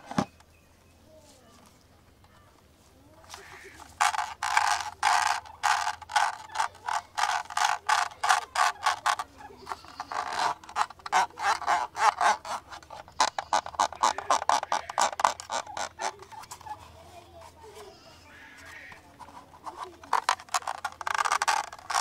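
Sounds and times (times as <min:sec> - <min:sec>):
camera clicks and scratchy strokes: 0:03.3 - 0:17.9, 0:18.6 - 0:22.0.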